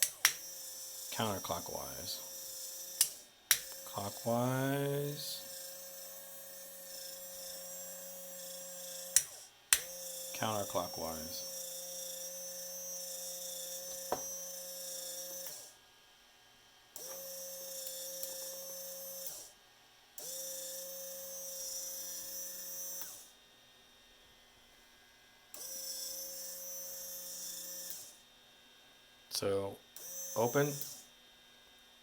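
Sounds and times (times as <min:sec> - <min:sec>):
sharp click: 0:00.0 - 0:00.4, 0:03.0 - 0:03.8, 0:09.2 - 0:09.9
small servo motor whining: 0:00.0 - 0:15.8, 0:17.0 - 0:19.6, 0:20.2 - 0:23.4, 0:25.5 - 0:28.2, 0:30.0 - 0:31.1.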